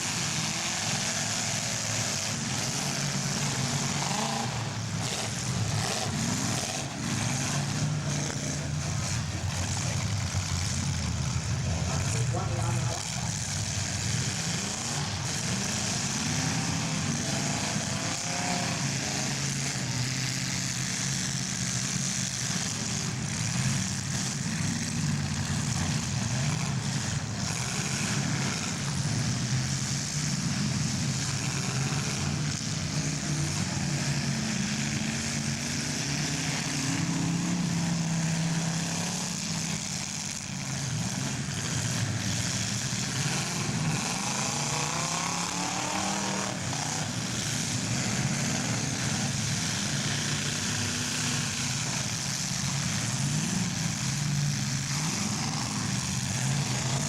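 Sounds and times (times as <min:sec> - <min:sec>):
car engines revving: 0:00.0 - 0:57.0.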